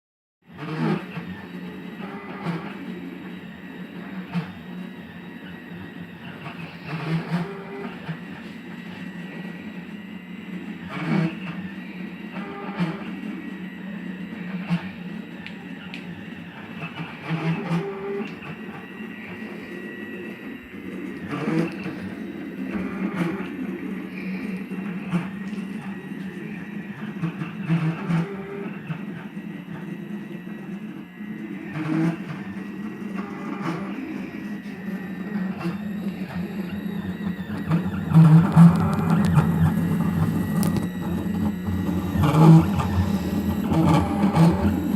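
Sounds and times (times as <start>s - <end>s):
stepper motors humming: 0.6s - 44.9s
router axes whining: 29.0s - 44.9s.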